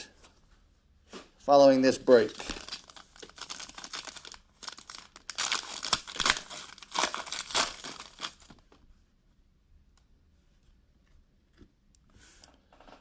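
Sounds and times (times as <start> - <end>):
plastic wrapping tearing and crinkling: 2.0 - 8.6.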